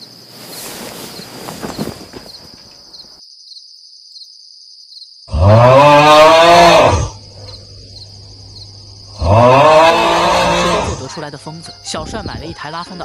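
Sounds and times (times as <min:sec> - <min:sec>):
cow mooing: 0:05.3 - 0:07.2, 0:09.2 - 0:11.0.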